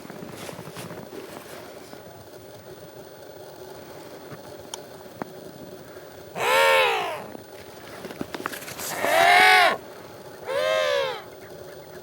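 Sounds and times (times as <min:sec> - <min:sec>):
penguins calling: 0:06.4 - 0:07.4, 0:08.9 - 0:09.8, 0:10.4 - 0:11.4.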